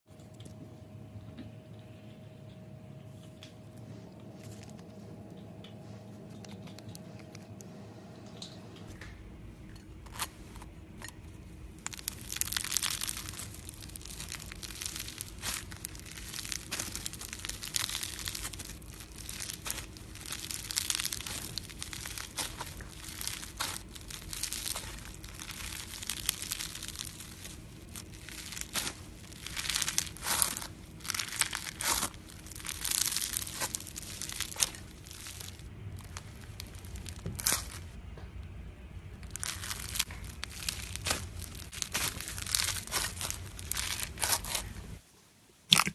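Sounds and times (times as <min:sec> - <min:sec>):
slime crackling and popping: 0:11.7 - 0:38.0, 0:39.1 - 0:45.0.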